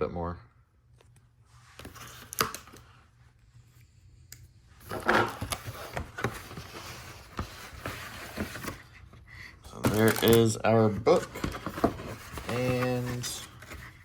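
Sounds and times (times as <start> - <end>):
packaging rustling and crinkling: 9.7 - 14.0.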